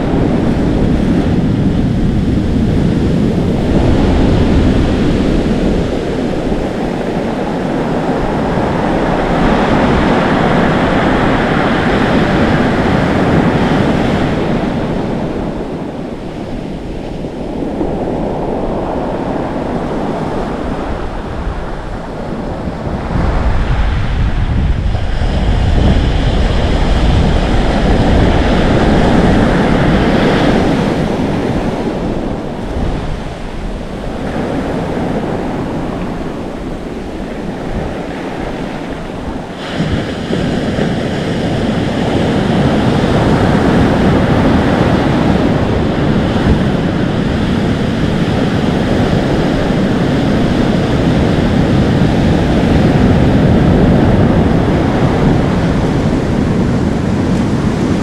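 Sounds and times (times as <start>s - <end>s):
waves breaking and foaming: 0.0s - 58.0s
wind buffeting microphone: 0.0s - 58.0s.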